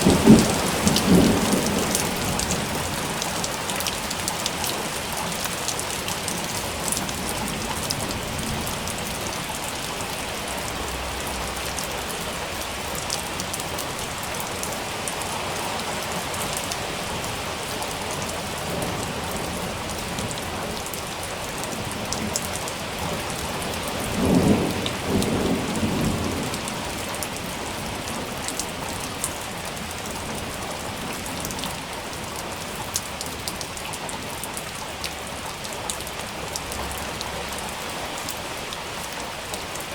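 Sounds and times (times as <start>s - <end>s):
thunder rumble: 0.0s - 3.7s
rain pattering: 0.0s - 39.9s.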